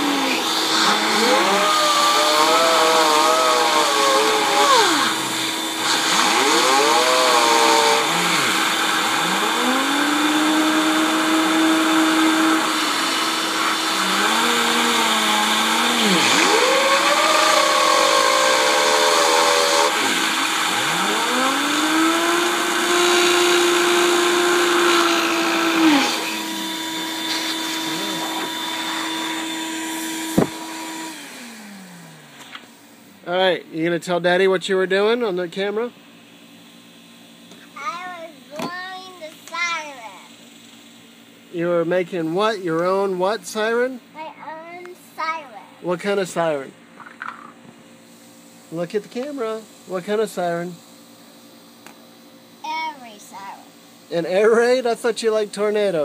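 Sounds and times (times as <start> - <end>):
boy imitating a siren: 0.9 - 5.3
steady hum: 12.5 - 56.0.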